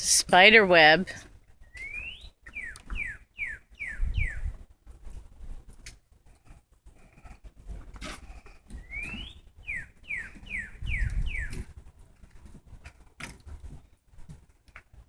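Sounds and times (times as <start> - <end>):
songbird whistling: 1.6 - 4.5, 8.8 - 11.7.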